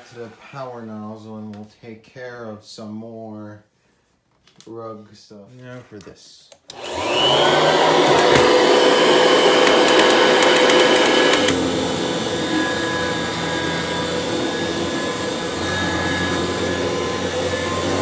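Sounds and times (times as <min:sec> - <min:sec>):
vacuum cleaner humming: 0:06.7 - 0:18.0.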